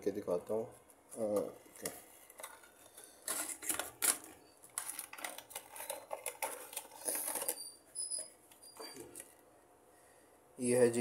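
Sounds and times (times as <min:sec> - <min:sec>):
packaging crackling: 0:01.2 - 0:07.7.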